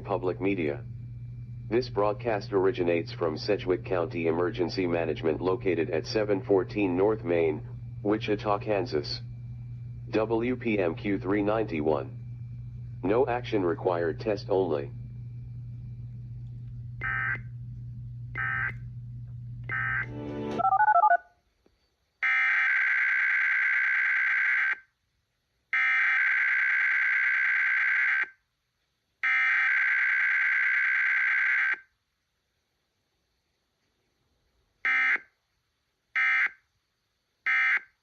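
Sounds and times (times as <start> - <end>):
steady low hum: 0.0 - 20.8.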